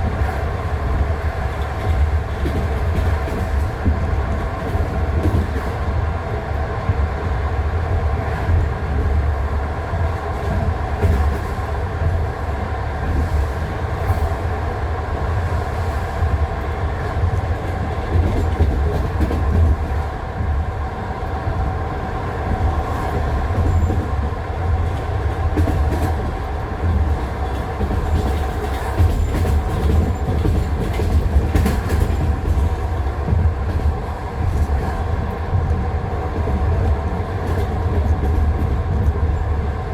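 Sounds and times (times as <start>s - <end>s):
train wheels knocking over rail joints: 25.5s - 34.8s.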